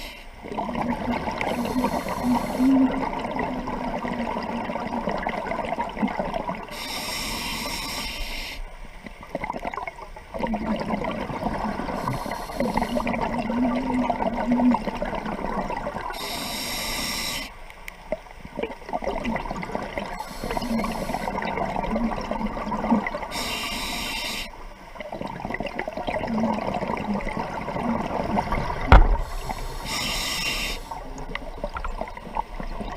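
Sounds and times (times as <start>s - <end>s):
bubbling exhale: 0.0s - 5.1s
diver breathing through regulator: 1.4s - 3.0s, 6.7s - 8.6s, 11.9s - 13.2s, 16.2s - 17.6s, 23.3s - 24.6s, 29.1s - 31.2s
sharp knock: 28.9s - 29.2s.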